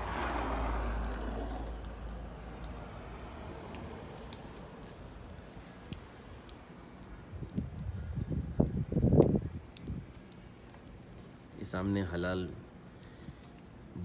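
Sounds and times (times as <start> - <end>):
wind buffeting microphone: 7.2 - 10.2
faint clicks: 12.4 - 13.7.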